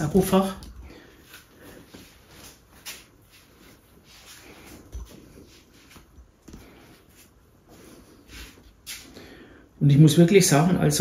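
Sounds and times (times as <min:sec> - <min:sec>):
soft rustling: 0:00.2 - 0:09.5.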